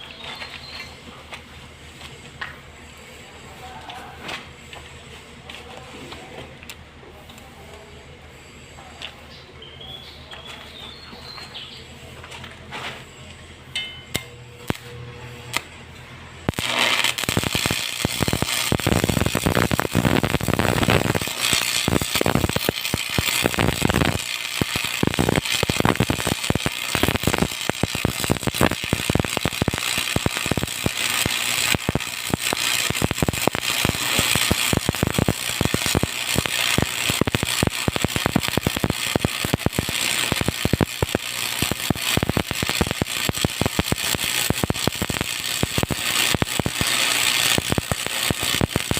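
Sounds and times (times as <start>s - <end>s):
welding arc crackling: 14.1s - 15.8s, 16.4s - 48.9s.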